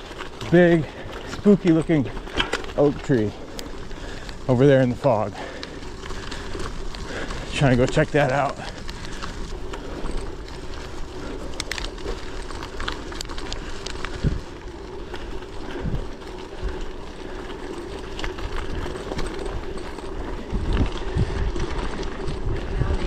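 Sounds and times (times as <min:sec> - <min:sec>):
bike tyres rolling: 0:00.0 - 0:23.0
wind rumble on microphone: 0:06.0 - 0:16.9, 0:18.0 - 0:23.0.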